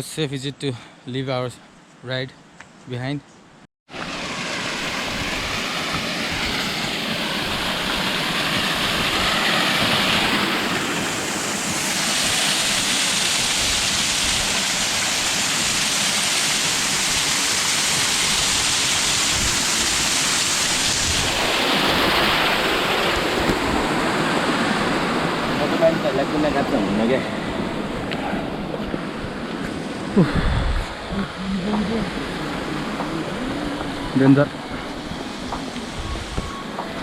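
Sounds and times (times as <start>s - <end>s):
water rushing: 3.9s - 37.0s.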